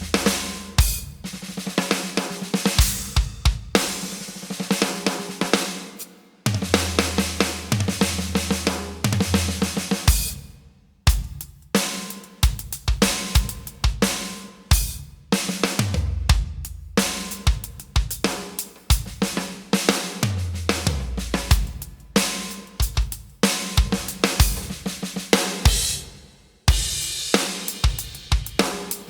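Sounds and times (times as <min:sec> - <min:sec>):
tom fills: 0:00.0 - 0:01.6, 0:06.5 - 0:10.2
electronic drum kit groove: 0:00.0 - 0:05.6, 0:06.5 - 0:10.5, 0:11.1 - 0:29.0.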